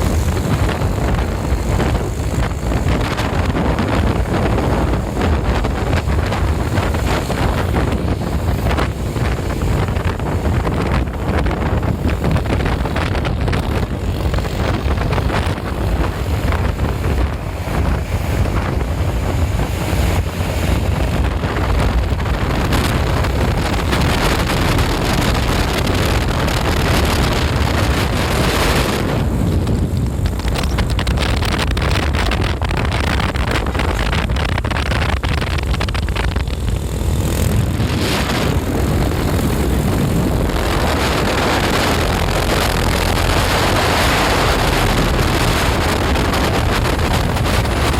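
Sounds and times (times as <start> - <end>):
heavy vehicle engines rumbling: 0.0 - 47.9
wind buffeting microphone: 0.0 - 47.9.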